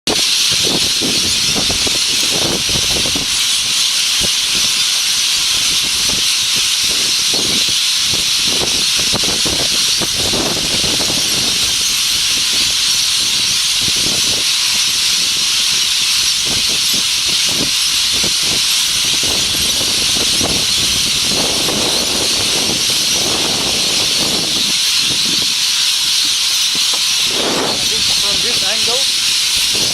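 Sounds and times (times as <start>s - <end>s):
flock of parrots shrieking: 0.1s - 29.9s.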